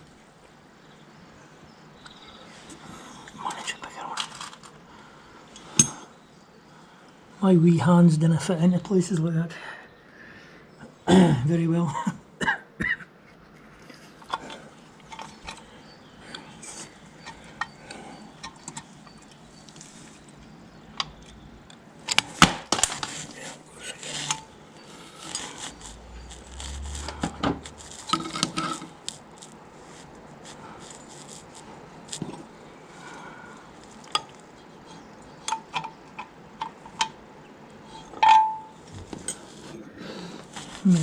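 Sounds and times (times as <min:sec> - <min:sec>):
metal parts and tools clinking: 0:25.1 - 0:29.0, 0:37.9 - 0:39.5.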